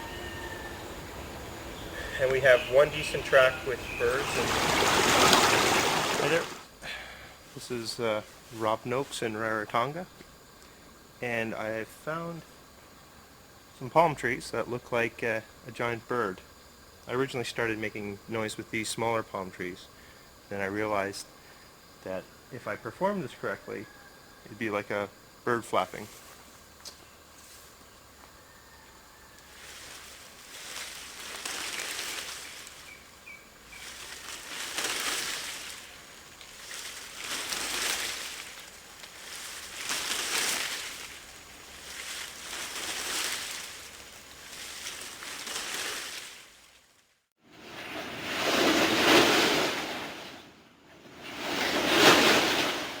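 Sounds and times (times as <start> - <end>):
palm fronds rustling whooshes: 1.0 - 6.8, 29.4 - 53.0.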